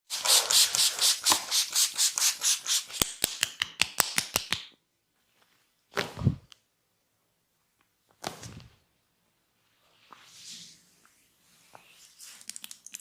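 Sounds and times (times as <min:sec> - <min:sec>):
hands rubbing and striking skin: 0:00.7 - 0:04.7
sharp snaps: 0:02.9 - 0:04.8.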